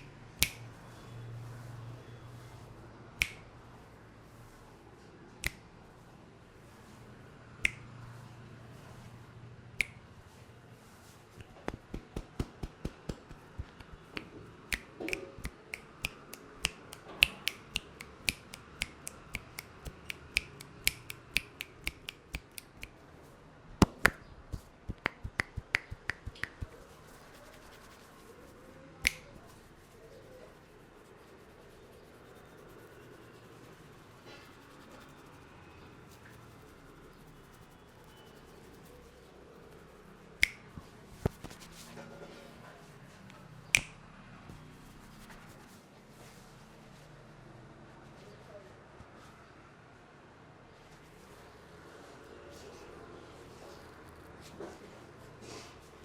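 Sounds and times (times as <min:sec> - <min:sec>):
hands snapping in head massage: 0:00.0 - 0:00.7, 0:03.2 - 0:03.5, 0:11.4 - 0:23.0, 0:23.8 - 0:28.2, 0:29.0 - 0:29.9, 0:36.6 - 0:37.7, 0:40.4 - 0:41.9, 0:43.7 - 0:44.0.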